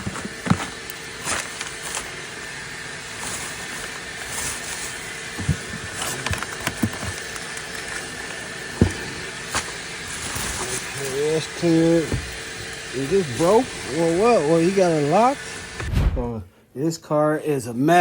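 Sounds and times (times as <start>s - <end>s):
items clattering inside car: 0.0s - 2.2s, 3.2s - 15.4s
steady hum: 0.0s - 17.6s.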